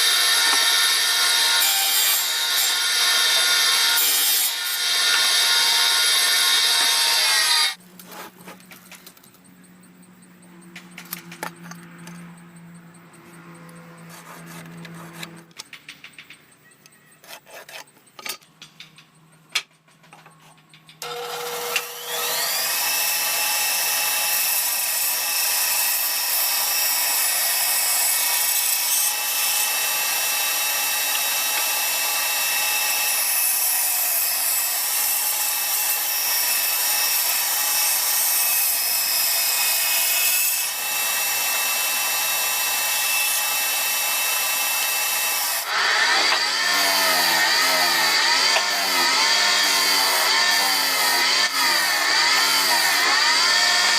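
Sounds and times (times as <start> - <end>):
power tool whining on wood: 0.0 - 7.8, 21.0 - 53.9.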